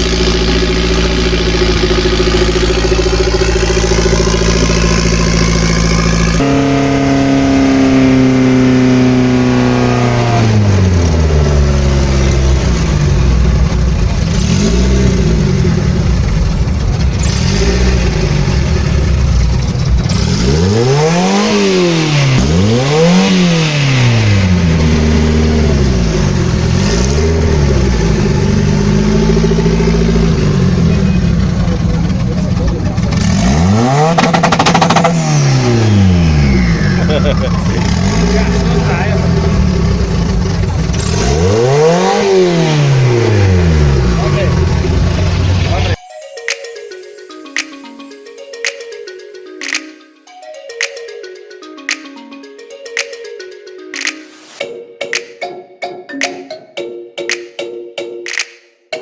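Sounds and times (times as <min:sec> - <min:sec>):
car engine revving: 0:00.0 - 0:46.0.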